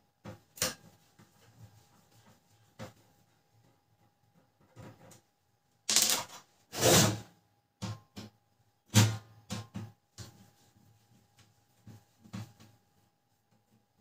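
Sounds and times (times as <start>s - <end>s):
plastic parts clicking and knocking: 5.9s - 6.4s.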